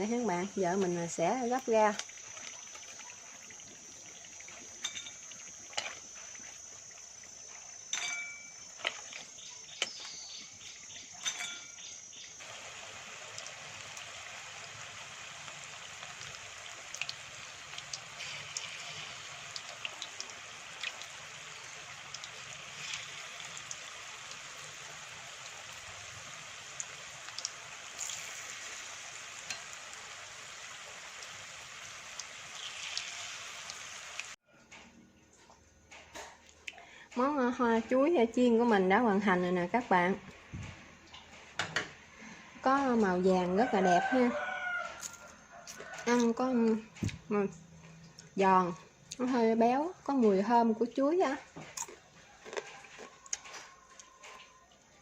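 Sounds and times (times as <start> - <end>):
deep-frying sizzle: 0.0 - 34.4, 40.5 - 47.2.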